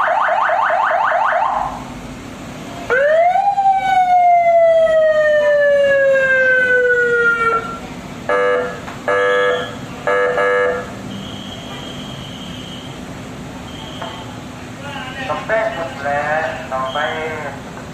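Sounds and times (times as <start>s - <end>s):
siren fast warble: 0.0s - 1.8s, 2.9s - 7.8s
siren tone rising and falling: 2.9s - 7.8s.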